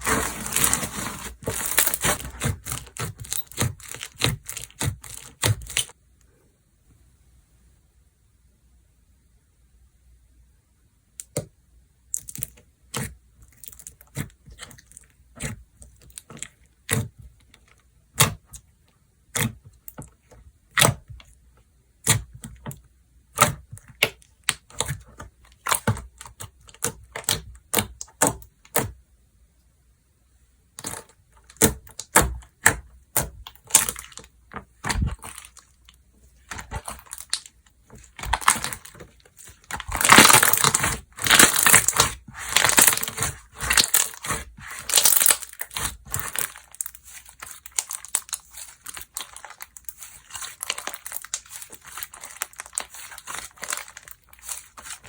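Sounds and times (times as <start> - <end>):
slime clicking and popping: 39.7 - 54.7.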